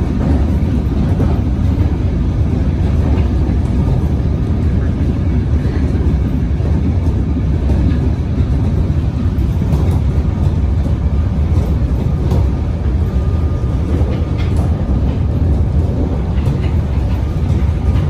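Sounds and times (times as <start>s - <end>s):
electric train rumbling: 0.0s - 18.0s.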